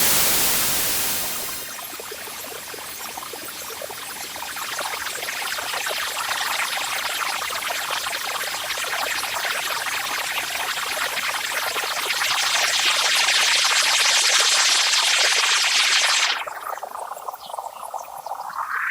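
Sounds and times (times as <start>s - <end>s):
white noise hiss: 0.0s - 1.8s.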